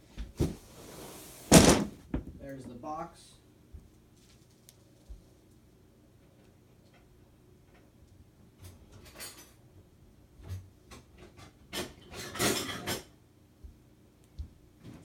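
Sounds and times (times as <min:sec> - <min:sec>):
cutlery and kitchenware clattering: 0:08.6 - 0:09.6, 0:10.9 - 0:13.1.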